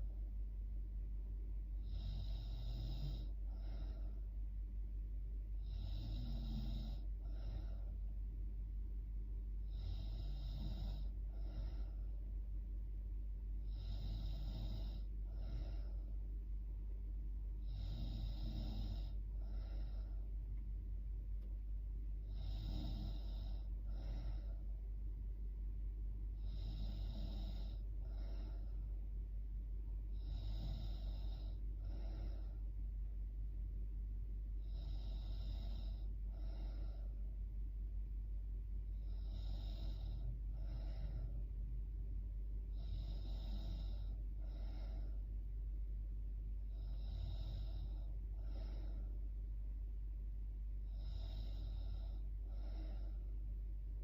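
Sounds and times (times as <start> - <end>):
steady low hum: 0.0 - 54.0
woman snoring: 1.8 - 4.2, 5.6 - 8.0, 9.7 - 12.0, 13.6 - 16.1, 17.6 - 20.2, 22.2 - 24.6, 26.4 - 28.8, 30.1 - 32.6, 34.6 - 37.2, 38.9 - 41.4, 42.7 - 45.3, 46.7 - 49.2, 50.8 - 53.3.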